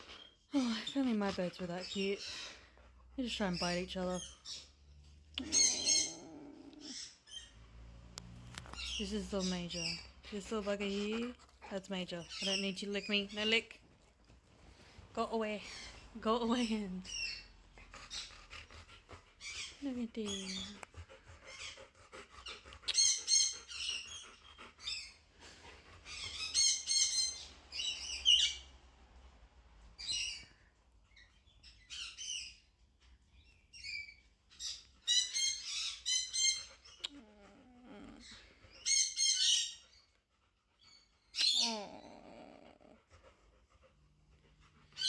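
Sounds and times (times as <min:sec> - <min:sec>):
parrots chirping and squawking: 0:00.0 - 0:13.7, 0:15.4 - 0:20.8, 0:21.5 - 0:28.8, 0:33.4 - 0:40.1, 0:40.8 - 0:43.0.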